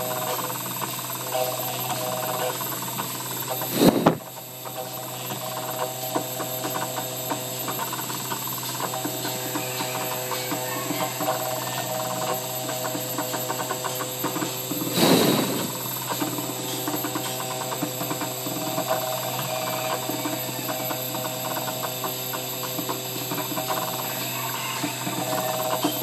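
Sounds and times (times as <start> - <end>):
carving machine humming: 0.0 - 26.0
rush of noise: 3.7 - 4.3, 14.8 - 15.8.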